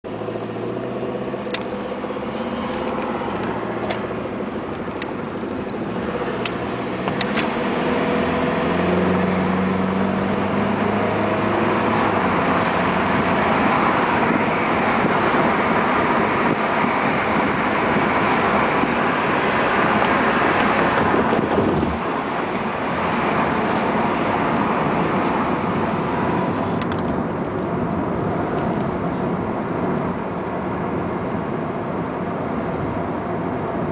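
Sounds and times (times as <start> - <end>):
car engine knocking and revving: 0.0 - 33.9.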